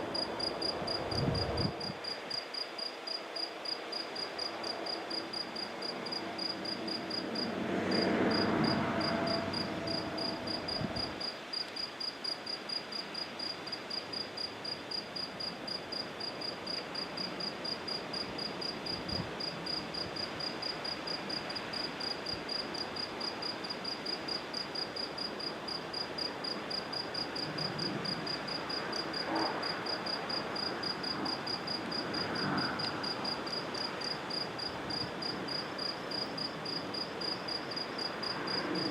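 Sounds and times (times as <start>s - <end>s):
background noise swell: 0.0s - 12.4s, 27.2s - 38.9s
cricket chirping: 0.0s - 38.9s.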